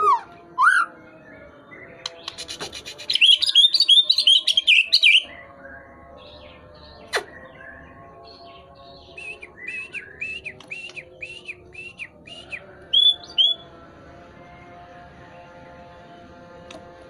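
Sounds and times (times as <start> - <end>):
bird singing whistled notes: 1.8 - 13.7.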